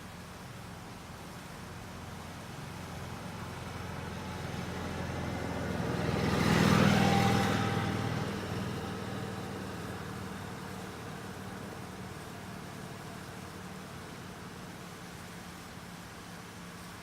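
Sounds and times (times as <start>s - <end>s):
vehicle driving past: 3.4s - 13.3s.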